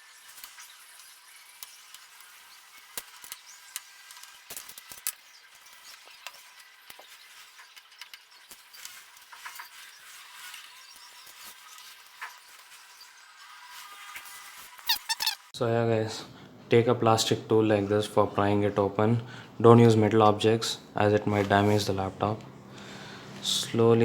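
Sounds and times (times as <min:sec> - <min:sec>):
screwdriver clicking and scraping: 0:14.8 - 0:15.4.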